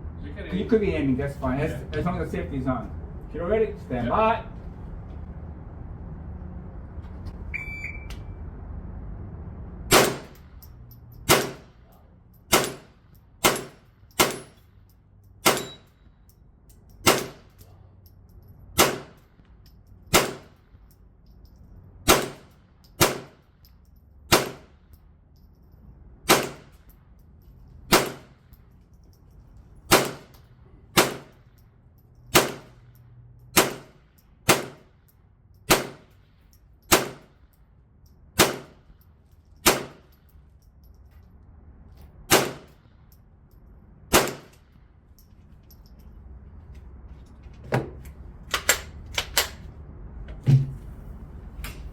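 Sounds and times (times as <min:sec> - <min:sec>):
shot timer beep: 0:07.6 - 0:08.2
small-calibre gunshots: 0:09.9 - 0:10.5, 0:11.2 - 0:11.8, 0:12.5 - 0:14.6, 0:15.4 - 0:15.9, 0:17.0 - 0:17.5, 0:18.8 - 0:19.3, 0:20.1 - 0:20.6, 0:22.0 - 0:23.4, 0:24.3 - 0:24.8, 0:26.2 - 0:26.8, 0:27.9 - 0:28.4, 0:29.9 - 0:31.5, 0:32.3 - 0:32.9, 0:33.5 - 0:35.0, 0:35.7 - 0:36.2, 0:36.9 - 0:37.4, 0:38.4 - 0:38.8, 0:39.6 - 0:40.1, 0:42.3 - 0:42.9, 0:44.1 - 0:44.7.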